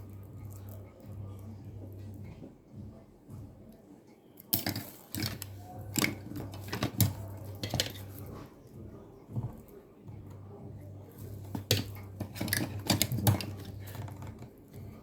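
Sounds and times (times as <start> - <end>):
wire stripper clicking and scraping: 4.4 - 8.4, 11.3 - 15.0.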